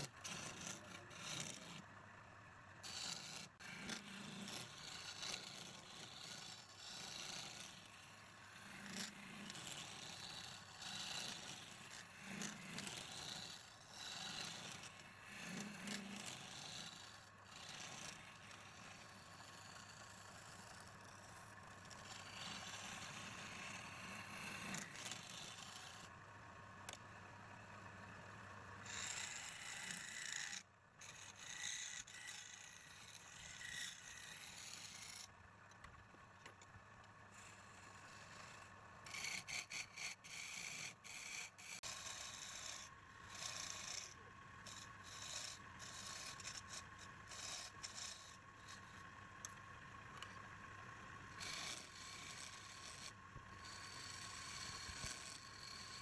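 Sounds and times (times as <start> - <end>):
rubbing and scraping strokes: 8.7 - 19.9, 39.1 - 49.0.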